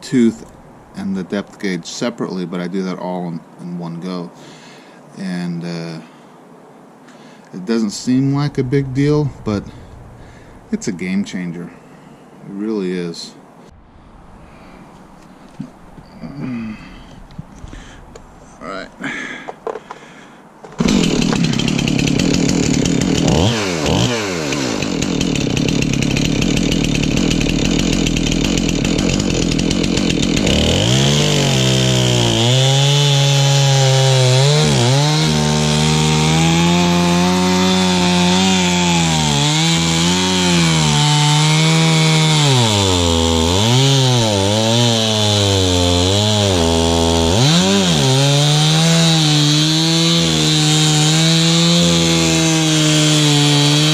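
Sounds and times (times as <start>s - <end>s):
chainsaw cutting wood: 20.7s - 53.9s.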